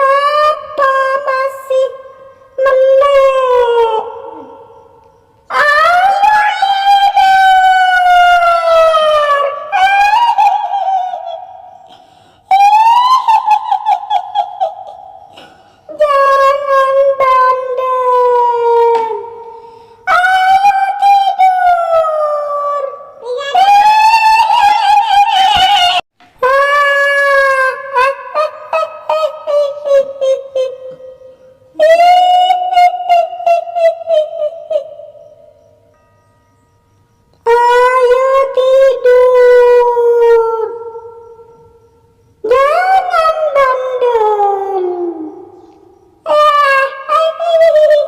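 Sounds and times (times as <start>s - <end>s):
woman's high-pitched wailing cries: 5.5s - 19.3s, 20.1s - 35.2s, 37.5s - 40.8s, 42.5s - 45.4s, 46.3s - 48.0s.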